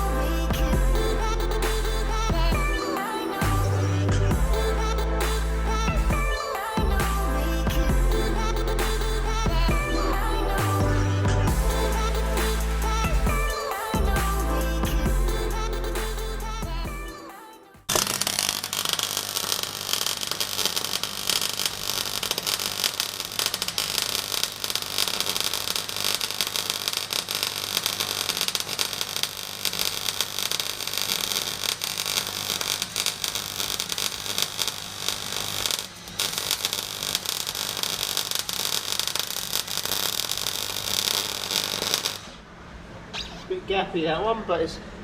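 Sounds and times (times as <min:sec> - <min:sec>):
low steady hum: 0:00.0 - 0:17.0
arc welding hissing and crackling: 0:18.0 - 0:42.4.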